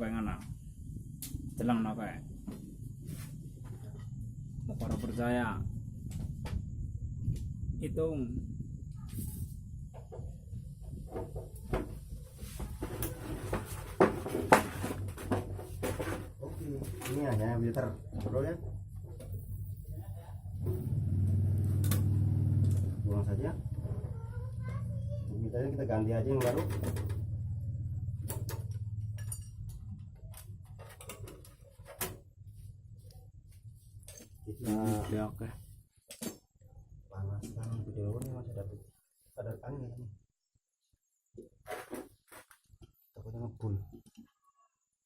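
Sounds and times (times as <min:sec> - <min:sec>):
low hum: 0:17.5 - 0:30.8
tools and metal parts clicking: 0:28.3 - 0:32.2.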